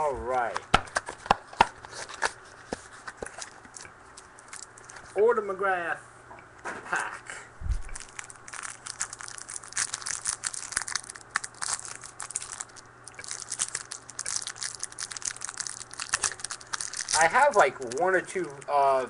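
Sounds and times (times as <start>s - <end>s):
wrapper crinkling and tearing: 3.0s - 5.1s, 7.9s - 18.7s.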